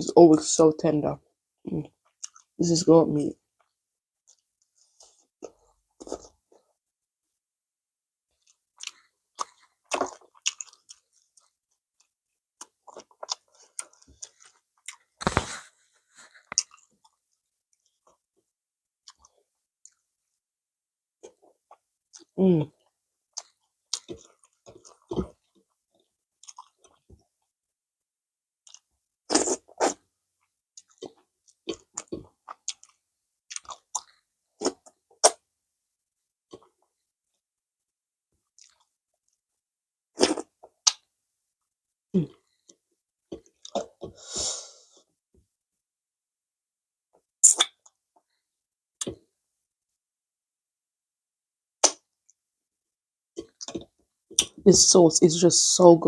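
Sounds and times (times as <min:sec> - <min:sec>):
close chewing with wet mouth clicks: 0:02.0 - 0:02.5, 0:08.4 - 0:11.5, 0:12.6 - 0:15.1, 0:19.0 - 0:20.0, 0:21.2 - 0:25.6, 0:26.4 - 0:27.1, 0:28.6 - 0:30.0, 0:30.8 - 0:35.4, 0:38.6 - 0:38.9, 0:43.4 - 0:44.0, 0:47.4 - 0:48.0, 0:53.4 - 0:54.6.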